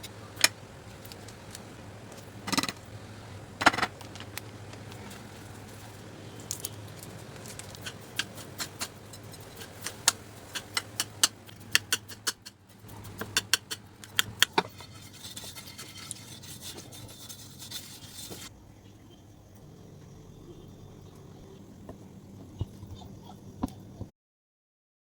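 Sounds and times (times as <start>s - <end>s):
low steady hum: 0.0s - 24.1s
sharp clicks and taps: 9.6s - 14.6s.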